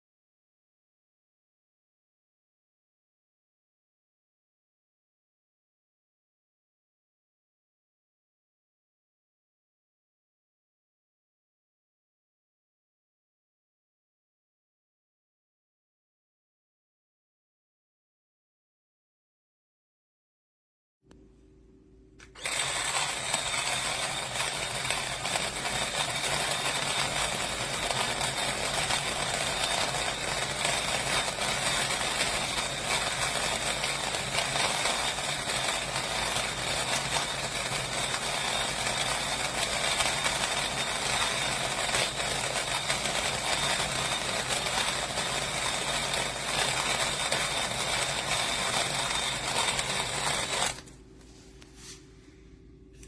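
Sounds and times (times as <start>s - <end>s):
electric coffee grinder whine: 22.2s - 51.0s.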